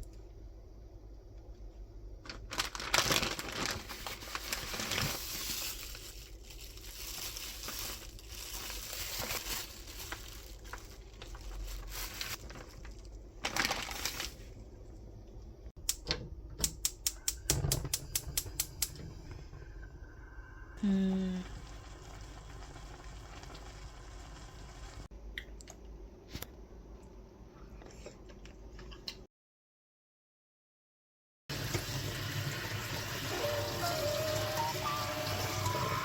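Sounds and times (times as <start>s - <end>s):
packaging rustling and crinkling: 2.2s - 14.6s.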